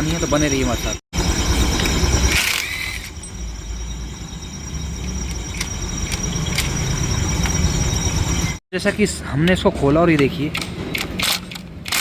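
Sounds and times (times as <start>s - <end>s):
scooter engine rumbling: 0.0s - 8.6s.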